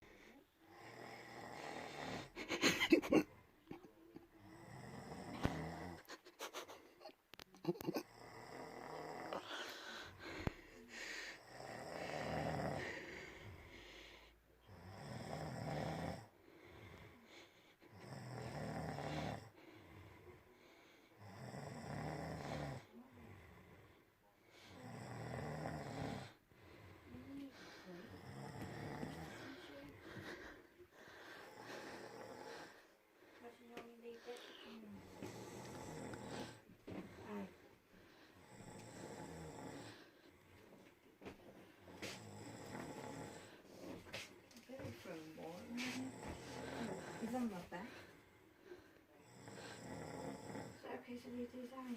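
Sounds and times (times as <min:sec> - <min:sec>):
man snoring: 0:00.6 - 0:03.2, 0:04.4 - 0:06.1, 0:07.6 - 0:17.3, 0:17.9 - 0:20.3, 0:21.0 - 0:24.0, 0:24.6 - 0:32.9, 0:34.6 - 0:37.5, 0:38.3 - 0:40.4, 0:41.8 - 0:43.6, 0:45.7 - 0:47.6, 0:49.2 - 0:50.9.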